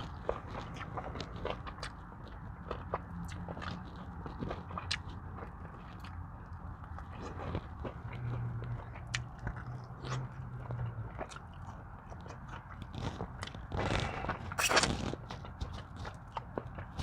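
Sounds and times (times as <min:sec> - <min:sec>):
crunching and rustling: 0:00.0 - 0:17.0
person chewing food: 0:00.0 - 0:17.0
wet mouth clicks: 0:14.6 - 0:14.9.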